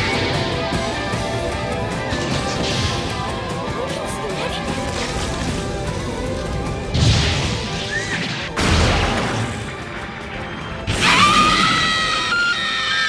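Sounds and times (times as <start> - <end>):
music: 0.0 - 13.0
heavy crashing impacts: 4.7 - 11.8.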